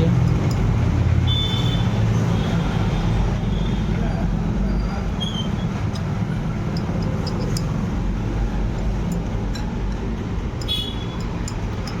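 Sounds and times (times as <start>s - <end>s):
hand tools clinking: 0.2s - 0.7s, 5.8s - 8.0s, 8.6s - 12.0s.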